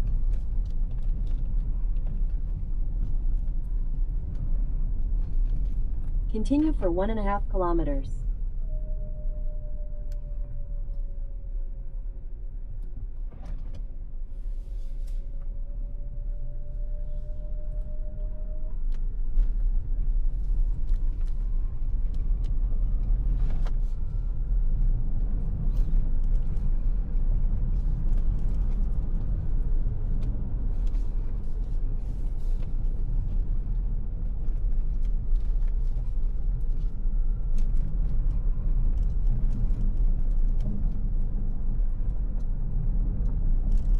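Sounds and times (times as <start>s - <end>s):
road and tyre rumble: 0.0s - 43.9s
faint steady tone: 6.3s - 22.0s.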